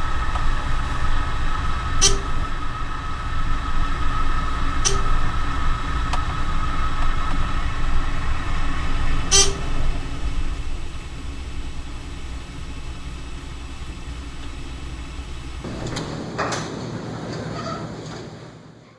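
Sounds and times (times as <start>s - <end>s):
low mechanical rumble: 0.0s - 18.9s.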